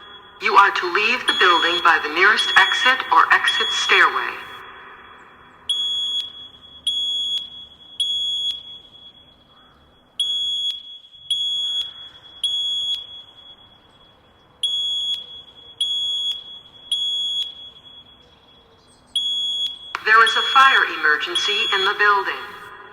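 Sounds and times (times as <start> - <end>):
high-pitched fire alarm beeps: 0.0 - 22.9.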